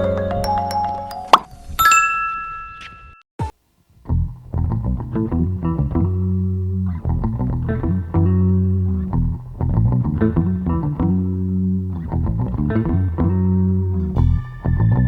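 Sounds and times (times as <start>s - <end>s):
bass line: 4.1s - 15.0s
guitar background music: 4.1s - 15.0s.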